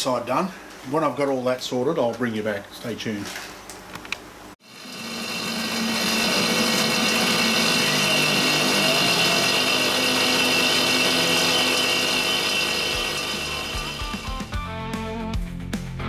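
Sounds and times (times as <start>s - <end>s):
power tool running: 4.6s - 14.6s.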